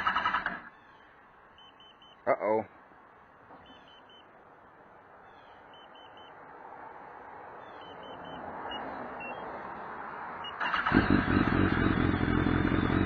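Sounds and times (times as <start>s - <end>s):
motorcycle engine starting and running: 0.0s - 0.6s, 10.4s - 13.0s
motorcycle alarm beeps: 1.6s - 2.2s, 3.7s - 4.3s, 5.7s - 6.4s, 7.7s - 9.4s, 10.4s - 10.7s.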